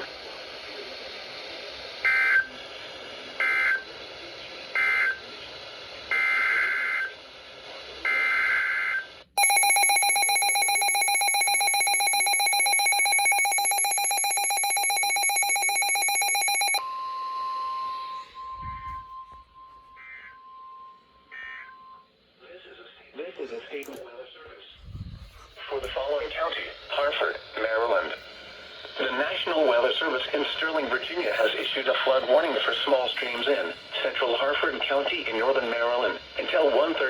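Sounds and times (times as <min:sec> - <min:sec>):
radio hiss: 0:00.0 - 0:09.3, 0:22.3 - 0:37.0
emergency attention tone: 0:09.4 - 0:22.1.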